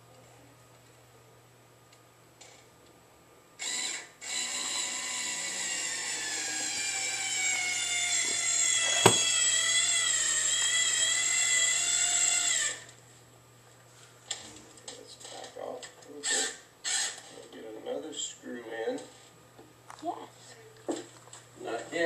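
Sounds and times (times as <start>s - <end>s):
drill whining: 3.6s - 12.9s.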